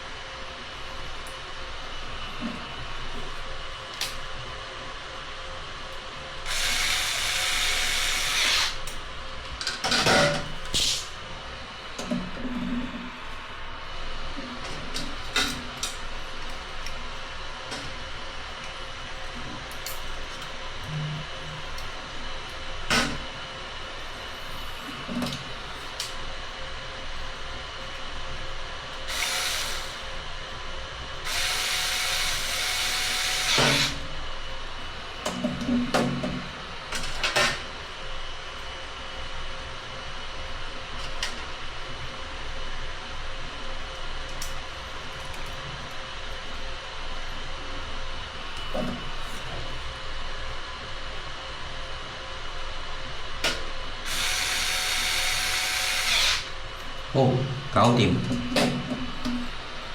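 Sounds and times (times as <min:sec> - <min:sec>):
power screwdriver driving screws: 0:06.5 - 0:08.8, 0:29.1 - 0:30.0, 0:31.3 - 0:34.0, 0:54.1 - 0:56.5
electric drill running: 0:06.5 - 0:08.9, 0:29.1 - 0:30.1, 0:31.2 - 0:34.1, 0:54.0 - 0:56.6.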